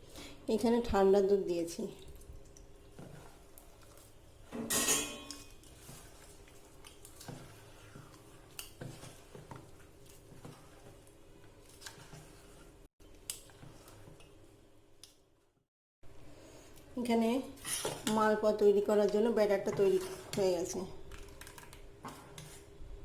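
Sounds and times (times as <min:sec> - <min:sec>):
batter stirring in a bowl: 0:01.9 - 0:04.5, 0:05.3 - 0:14.7, 0:17.2 - 0:23.0.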